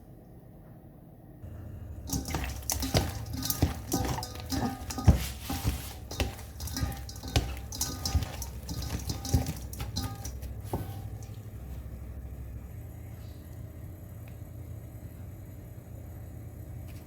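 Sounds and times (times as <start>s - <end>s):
steady low hum: 1.4s - 16.7s
dishes and utensils clattering: 2.1s - 11.4s
running water: 2.1s - 11.7s.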